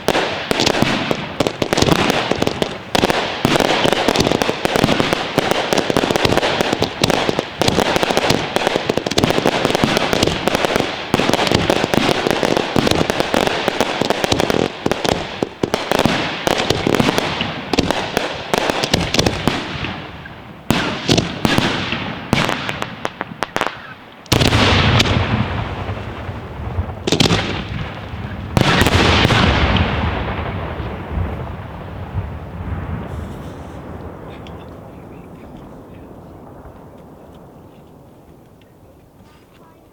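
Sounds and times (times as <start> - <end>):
fireworks bangs and crackling: 0.0 - 39.9
rumbling echo: 24.4 - 38.4.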